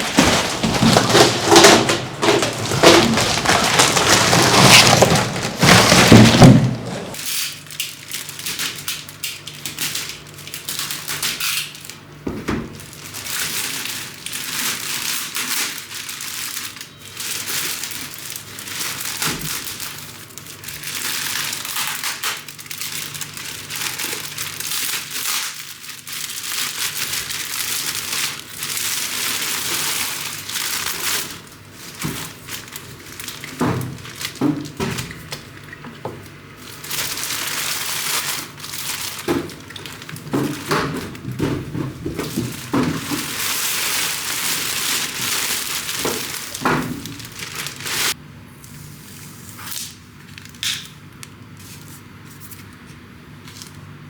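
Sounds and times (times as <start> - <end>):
plastic packaging crinkling: 0.0 - 12.1, 12.7 - 48.2.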